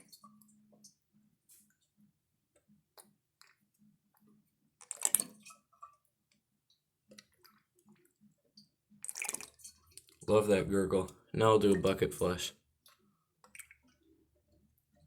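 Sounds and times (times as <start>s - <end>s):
faint water drips and clicks: 0.0s - 15.0s
toilet bowl draining gurgle: 7.2s - 12.7s.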